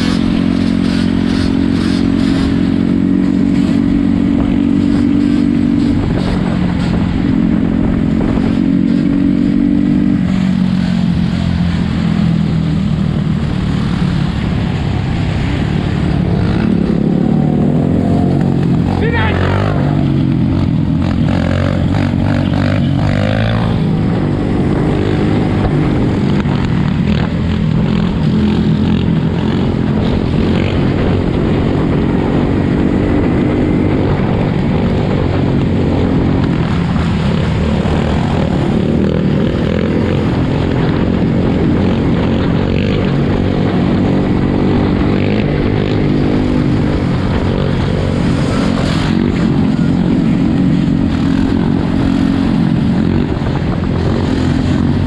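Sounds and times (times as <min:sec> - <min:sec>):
several off-road engines running: 0:00.0 - 0:55.0.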